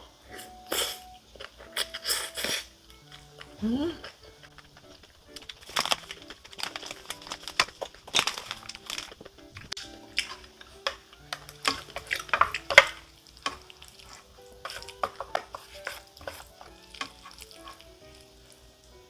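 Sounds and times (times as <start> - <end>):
spoon clinking: 2.9 - 18.4
spoon scraping metal bowl: 9.8 - 18.2.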